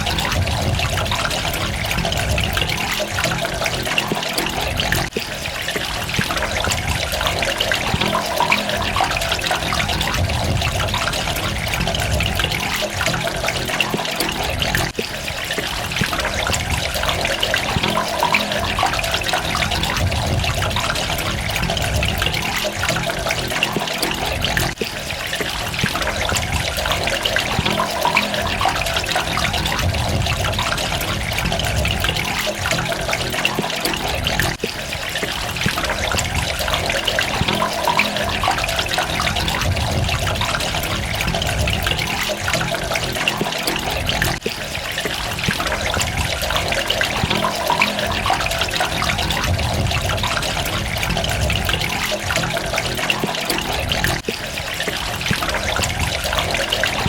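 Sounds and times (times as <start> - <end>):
running trickling water: 0.0 - 57.0.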